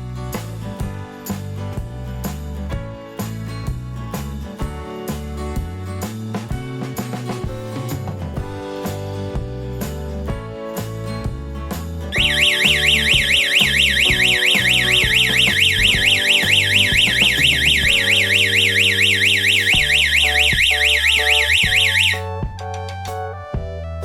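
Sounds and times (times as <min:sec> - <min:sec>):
background music: 0:00.0 - 0:24.0
security alarm siren warbling: 0:12.2 - 0:22.2.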